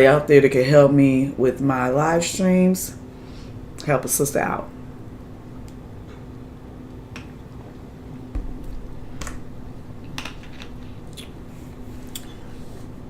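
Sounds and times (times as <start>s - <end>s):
faint steady hum: 0.0s - 13.0s
dull thump: 8.3s - 8.9s.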